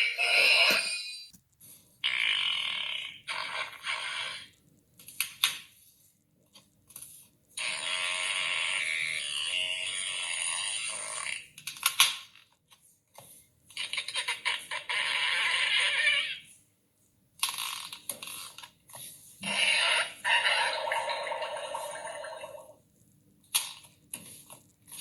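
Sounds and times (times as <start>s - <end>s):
cartoon fart sounds: 2.0s - 4.6s, 7.6s - 11.5s.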